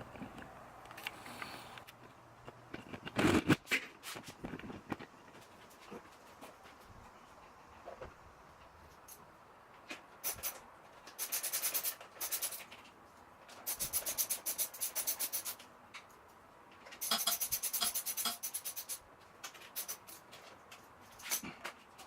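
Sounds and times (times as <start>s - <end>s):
ratchet wrench clicking: 17.0s - 19.0s.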